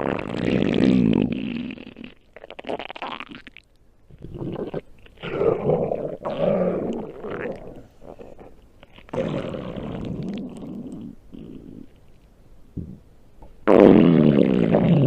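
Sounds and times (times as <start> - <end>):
stomach growling: 0.0 - 12.0.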